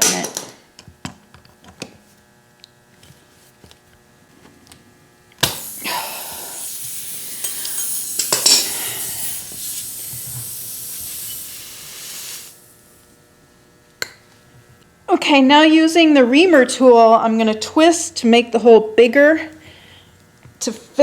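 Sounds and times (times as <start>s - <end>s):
air hissing out of tire: 5.4s - 12.8s.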